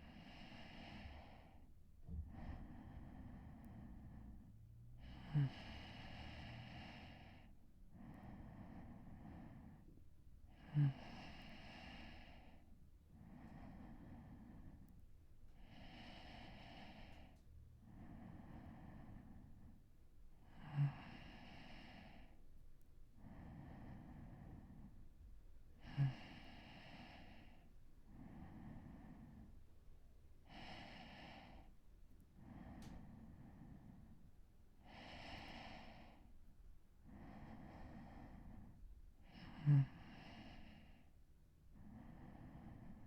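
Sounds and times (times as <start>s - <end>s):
man breathing deeply: 0.0s - 19.8s, 25.8s - 29.6s, 30.5s - 31.8s, 32.4s - 36.4s, 37.0s - 43.0s
man snoring: 0.1s - 1.5s, 5.0s - 9.8s, 10.5s - 12.6s, 15.6s - 17.4s, 20.5s - 22.3s, 25.8s - 27.6s, 30.5s - 31.7s, 34.9s - 36.2s, 37.2s - 41.0s.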